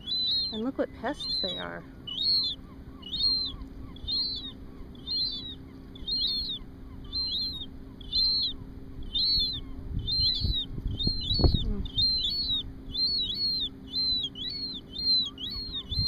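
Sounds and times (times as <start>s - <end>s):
gull chicks begging calls: 0.0s - 16.0s.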